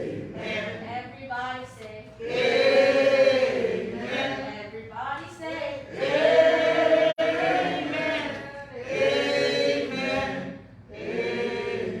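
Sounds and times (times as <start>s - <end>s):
congregation and choir singing: 0.0s - 0.9s, 2.2s - 4.7s, 5.9s - 12.0s.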